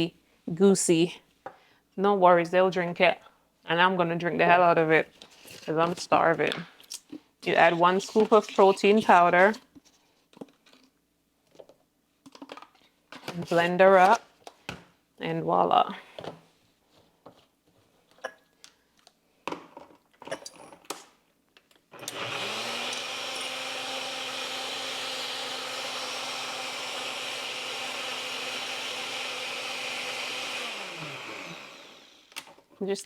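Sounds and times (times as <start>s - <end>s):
blender motor running: 22.0s - 32.4s.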